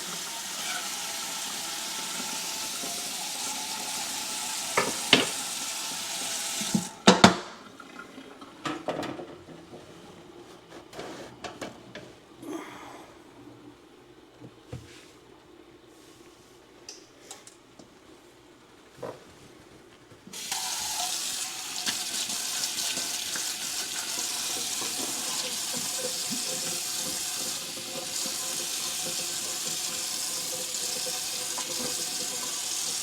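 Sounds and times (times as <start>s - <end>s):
sink tap turned on: 0.0s - 7.6s, 20.4s - 33.0s
water running into sink: 0.0s - 9.2s, 20.4s - 33.0s
dishes knocking: 4.8s - 5.4s.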